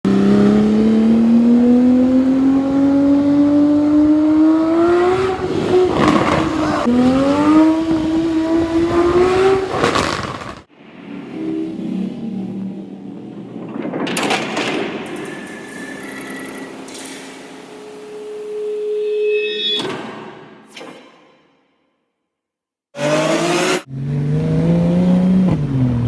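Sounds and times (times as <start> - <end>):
car engine accelerating: 0.1 - 10.7, 23.0 - 26.0
exhaust pops and crackles: 5.4 - 6.9, 7.9 - 10.7.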